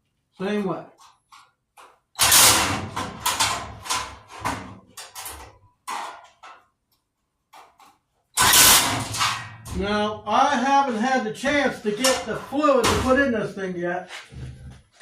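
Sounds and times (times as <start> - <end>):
sheet metal clanking and rattling: 2.2 - 6.7, 7.6 - 10.2, 11.4 - 13.4.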